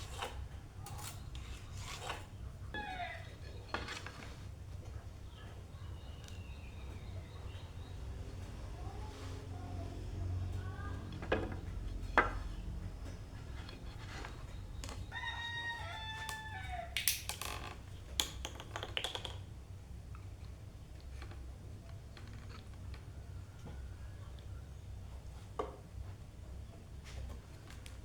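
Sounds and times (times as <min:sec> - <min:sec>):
rooster crowing: 0:02.8 - 0:03.4, 0:15.0 - 0:17.1.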